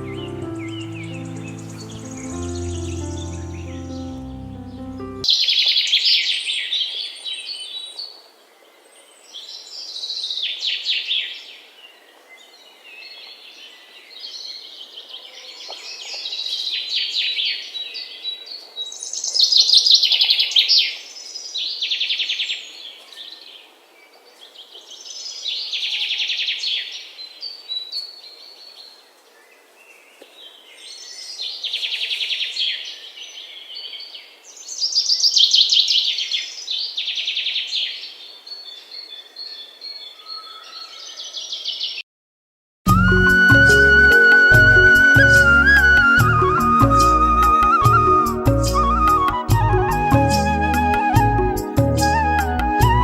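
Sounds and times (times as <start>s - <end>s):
bird trilling chirps: 0.0s - 5.5s, 42.9s - 49.4s.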